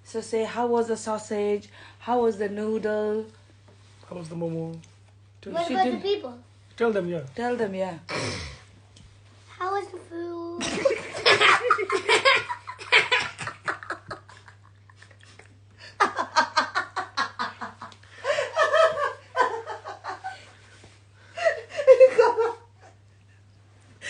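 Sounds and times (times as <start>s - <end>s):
people laughing: 10.6s - 20.4s.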